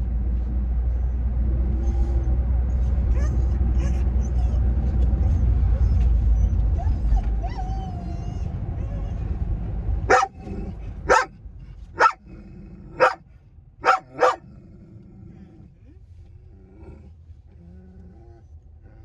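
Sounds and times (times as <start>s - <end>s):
car rumble: 0.0s - 19.0s
dog whining: 1.0s - 9.5s, 10.1s - 11.3s
dog barking: 10.0s - 11.3s, 12.0s - 12.2s, 12.9s - 13.2s, 13.8s - 14.5s.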